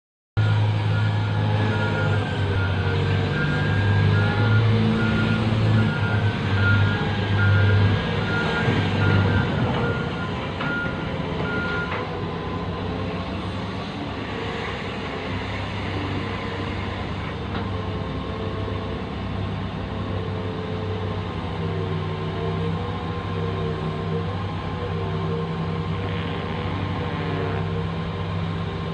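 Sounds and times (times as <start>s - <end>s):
reversing alarm beeping: 0.4s - 12.1s
heavy diesel machinery running: 0.4s - 28.9s.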